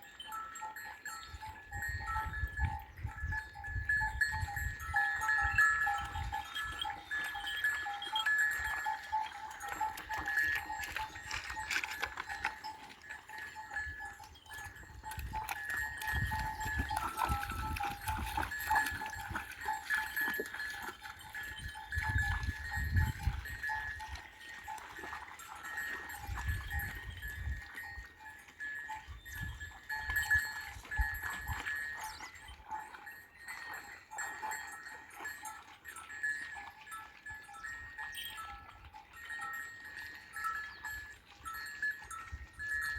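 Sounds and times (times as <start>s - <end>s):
sheep bells clinking: 0.0s - 42.9s.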